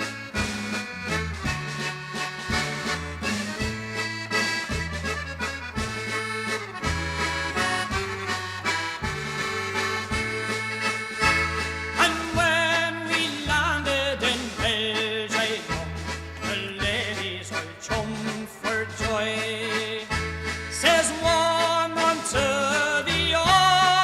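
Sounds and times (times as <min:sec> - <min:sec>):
folk melody: 0:00.0 - 0:24.0
pulsing bass line: 0:00.0 - 0:24.0
person singing: 0:12.0 - 0:24.0.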